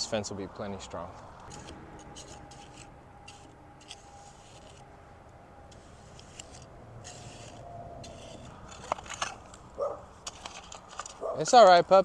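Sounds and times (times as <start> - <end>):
dog bark: 9.8 - 10.1, 11.2 - 11.4.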